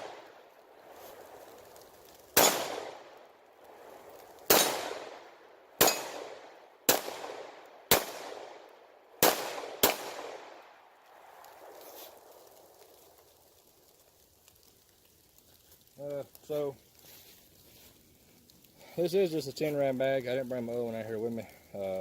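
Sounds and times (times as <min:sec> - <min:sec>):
pistol shots with echo: 0:02.4 - 0:03.0, 0:04.5 - 0:05.2, 0:05.8 - 0:08.6, 0:09.2 - 0:10.6.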